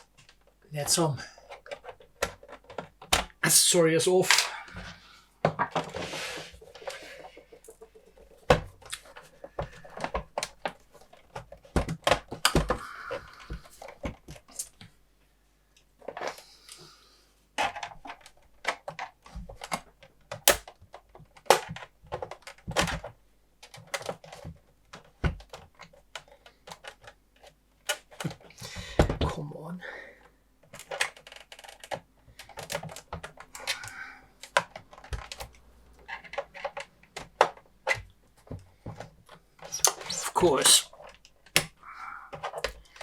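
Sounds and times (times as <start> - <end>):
plastic and metal parts handled: 1.4 - 3.4, 30.7 - 43.0.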